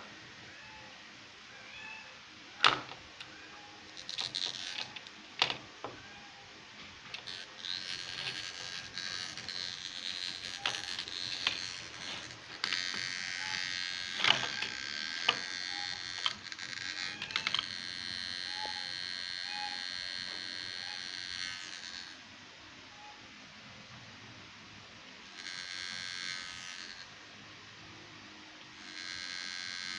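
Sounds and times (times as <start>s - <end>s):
hard drive buzzing: 2.6s - 22.2s, 25.2s - 27.2s, 28.7s - 29.9s.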